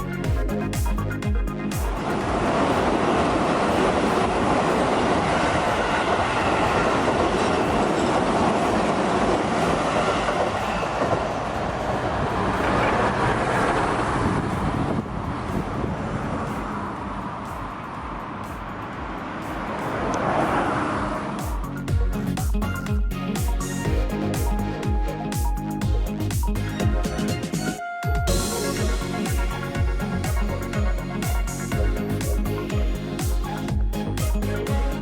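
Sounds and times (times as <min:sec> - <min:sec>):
train wheels rumbling on rails: 0:00.0 - 0:23.0.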